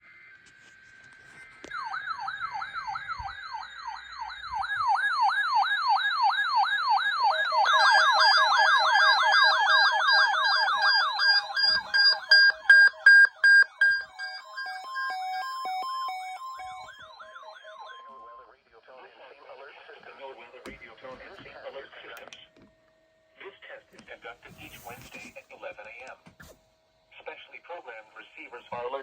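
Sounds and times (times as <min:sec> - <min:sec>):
downward sweeping siren tone: 0:01.6 - 0:18.5
faster sweeping alarm: 0:01.6 - 0:18.5
loud pulsed beeps: 0:07.7 - 0:18.4.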